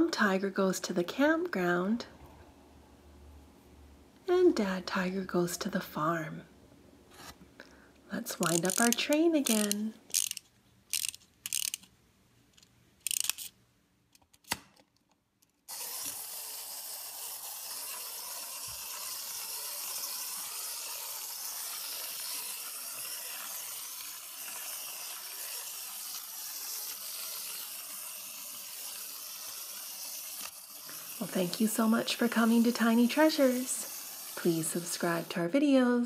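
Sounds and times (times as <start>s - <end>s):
toy train mechanical hiss: 8.3s - 11.8s, 13.0s - 13.5s, 15.7s - 35.6s
clockwork ratchet clicks: 8.4s - 11.9s, 13.0s - 13.5s, 15.7s - 35.0s.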